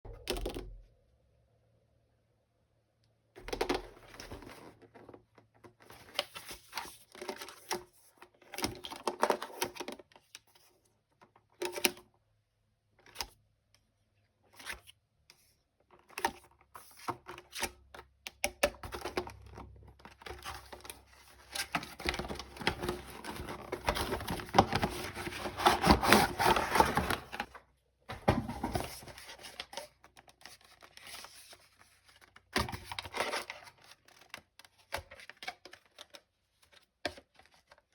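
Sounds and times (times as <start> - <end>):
packaging crinkling and tearing: 21.4 - 27.6.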